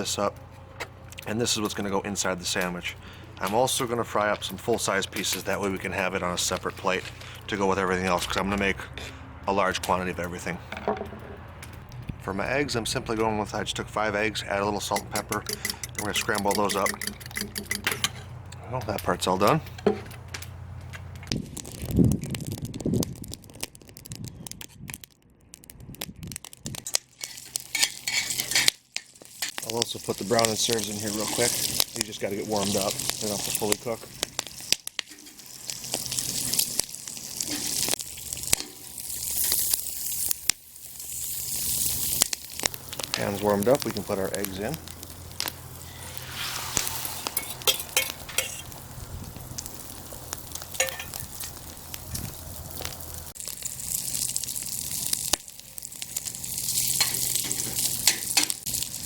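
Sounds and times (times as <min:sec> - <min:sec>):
eggs sizzling in a pan: 0:14.3 - 0:18.5, 0:26.2 - 0:59.0
utensil scraping a pan: 0:14.8 - 0:18.5, 0:19.6 - 0:20.2, 0:27.2 - 0:29.6, 0:30.4 - 0:31.9, 0:35.0 - 0:36.7, 0:37.4 - 0:39.7, 0:45.7 - 0:48.8
handling clicks: 0:14.9 - 0:18.3
plastic packaging crinkling and tearing: 0:20.4 - 0:45.9.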